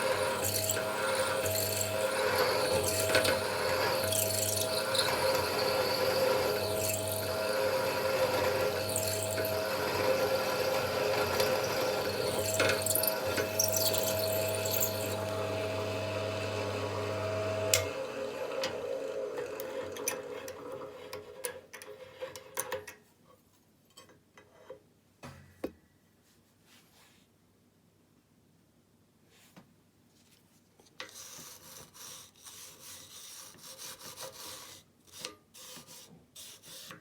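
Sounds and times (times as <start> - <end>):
electric drill boring into metal: 0.0 - 20.7.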